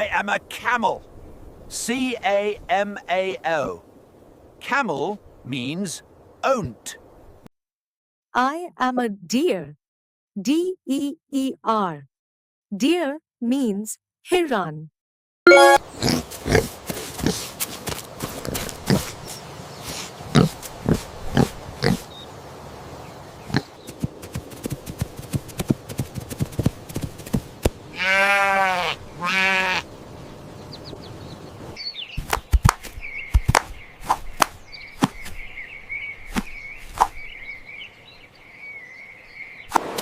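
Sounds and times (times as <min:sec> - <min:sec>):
wavering high tone: 0:15.5 - 0:15.8
animal bleating: 0:27.9 - 0:29.9.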